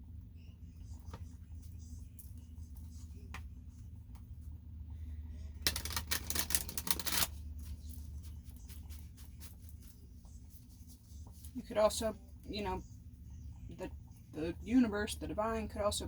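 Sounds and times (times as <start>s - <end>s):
steady low hum: 0.0s - 16.0s
cards handled small clicks: 5.6s - 7.3s
cards shuffling clicks: 5.6s - 7.8s.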